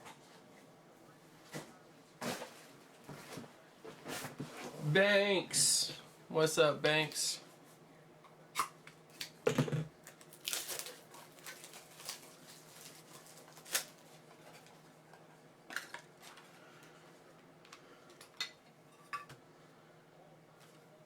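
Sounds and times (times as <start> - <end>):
knock on table: 9.5 - 9.9.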